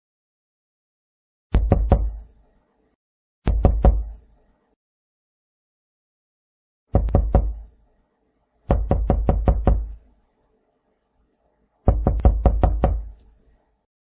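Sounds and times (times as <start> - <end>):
knocking on a door: 1.6 - 2.2, 3.5 - 4.2, 6.9 - 7.6, 8.7 - 10.0, 11.9 - 13.1.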